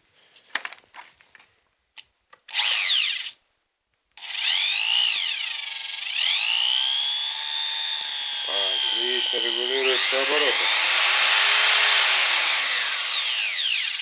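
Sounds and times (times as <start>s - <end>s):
electric drill motor whine: 2.5s - 3.4s, 4.2s - 14.0s.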